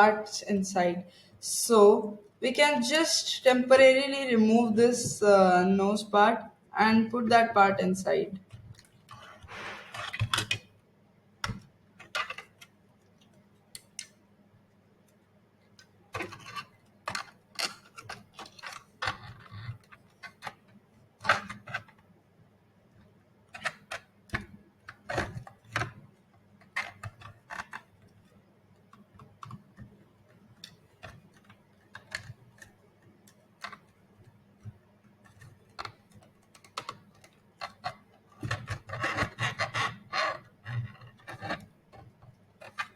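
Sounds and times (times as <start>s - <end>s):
hard plastic parts clicking: 9.9s - 10.7s.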